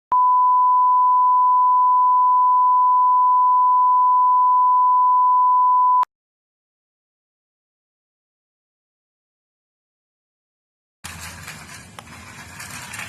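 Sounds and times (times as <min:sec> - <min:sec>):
steady electronic beep tone: 0:00.1 - 0:06.1.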